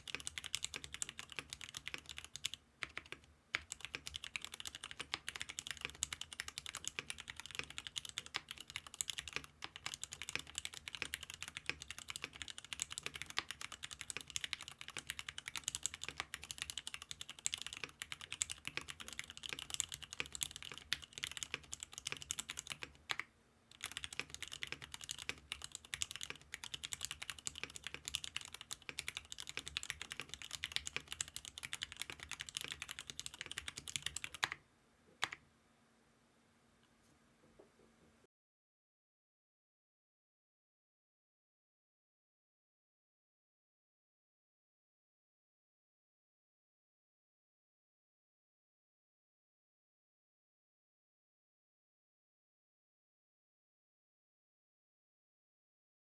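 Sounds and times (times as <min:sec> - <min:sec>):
fast mechanical keyboard typing: 0:00.0 - 0:34.6.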